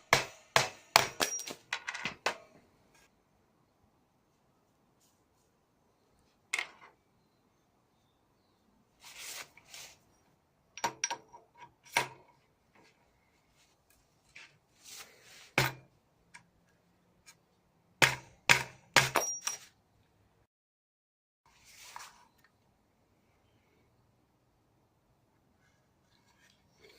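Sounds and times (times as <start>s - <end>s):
hand tools striking metal: 0.0s - 2.4s
soft scraping and rustling: 9.0s - 10.2s, 21.5s - 22.5s.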